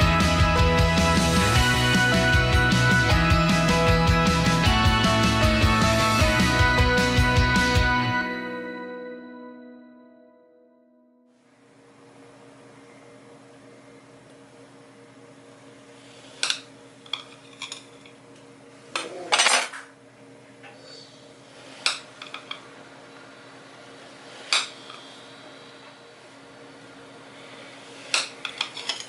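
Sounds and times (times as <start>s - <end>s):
steady low hum: 11.4s - 29.0s
utensils clinking against dishes: 28.1s - 29.0s.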